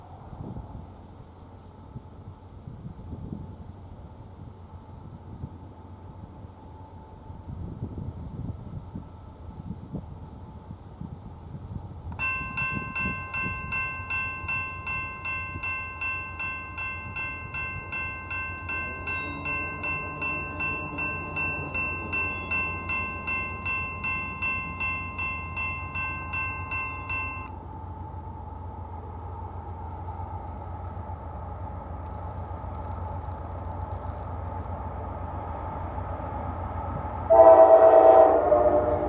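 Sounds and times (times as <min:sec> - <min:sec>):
crossing warning bell ringing: 0:12.2 - 0:28.8.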